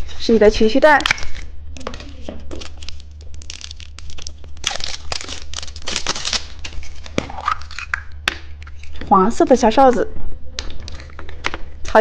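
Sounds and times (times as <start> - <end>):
plastic packaging crinkling and tearing: 1.0 - 9.0.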